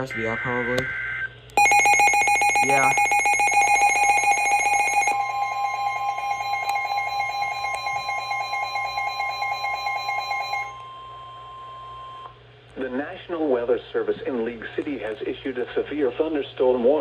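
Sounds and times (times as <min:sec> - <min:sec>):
pulsing electronic alarm tone: 0:00.0 - 0:12.3
steady warning alarm tone: 0:00.0 - 0:12.3.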